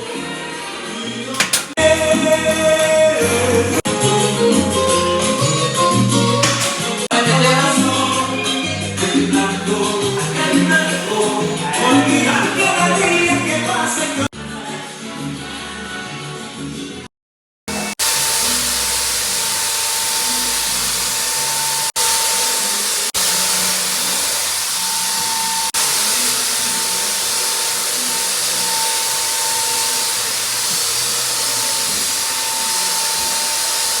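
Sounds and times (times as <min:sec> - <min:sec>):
loud machine hiss with whine: 0:01.4 - 0:01.8, 0:06.4 - 0:07.1, 0:10.0 - 0:12.6, 0:17.7 - 0:34.0.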